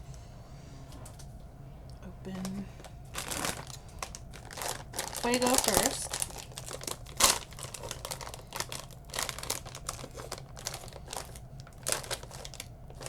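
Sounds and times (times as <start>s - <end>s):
plastic snack bag crackling: 2.4s - 13.0s.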